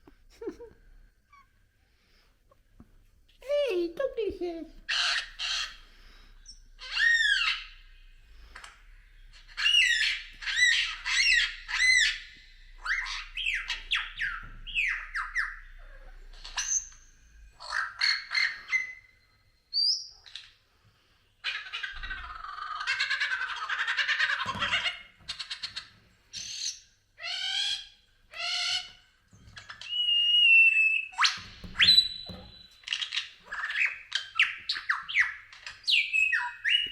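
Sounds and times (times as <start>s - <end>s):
bird squawks chirps and whistles: 9.4s - 20.4s, 29.6s - 36.9s.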